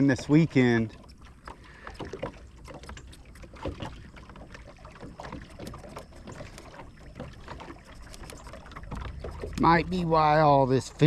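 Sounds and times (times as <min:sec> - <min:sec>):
small waves slapping boat hull: 0:00.0 - 0:11.0
low rumble: 0:08.8 - 0:11.0.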